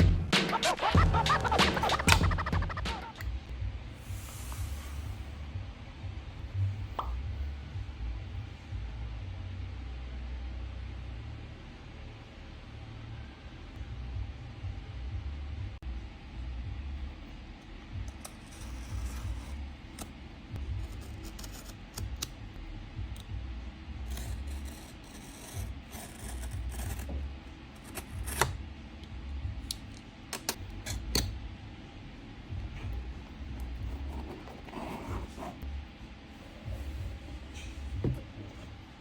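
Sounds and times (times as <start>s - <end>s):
low uneven rumble: 32.3s - 39.0s.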